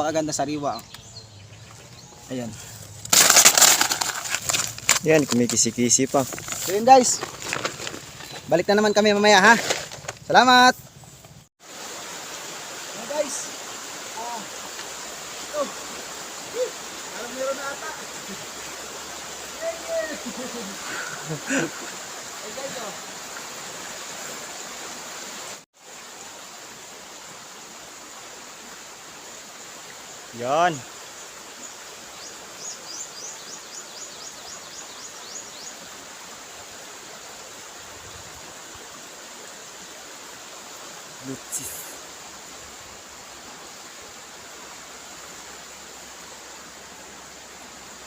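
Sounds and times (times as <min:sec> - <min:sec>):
rushing hiss: 0:11.6 - 0:34.0, 0:35.0 - 0:48.0
flowing water: 0:11.6 - 0:48.0.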